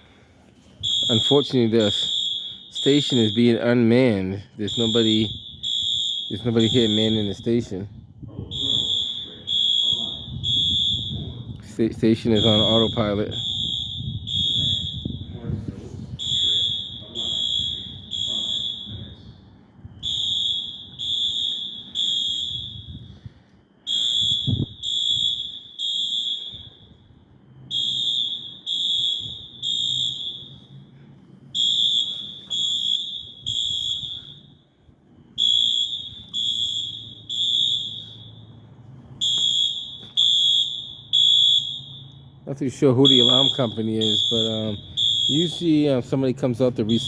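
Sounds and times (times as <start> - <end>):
fire alarm horns beeping: 0.0 - 47.0.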